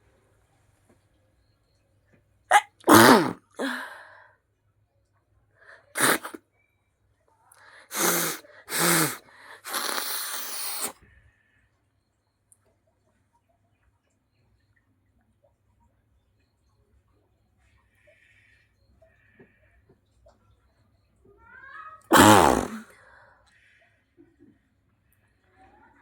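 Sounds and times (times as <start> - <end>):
person sneezing: 2.5 - 3.9, 5.9 - 6.4, 7.9 - 10.9, 22.1 - 22.9.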